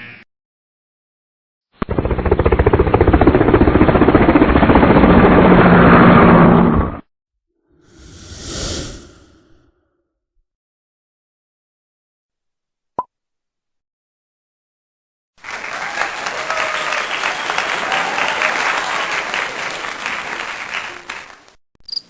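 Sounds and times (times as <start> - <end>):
short whoosh: 7.9 - 9.7.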